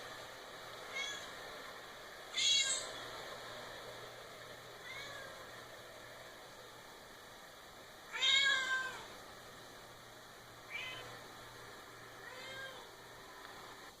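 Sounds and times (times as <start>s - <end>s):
steady hiss: 0.0s - 14.0s
cat meowing: 0.9s - 1.3s, 2.4s - 2.9s, 4.8s - 5.4s, 8.1s - 9.1s, 10.7s - 11.2s, 12.2s - 12.9s.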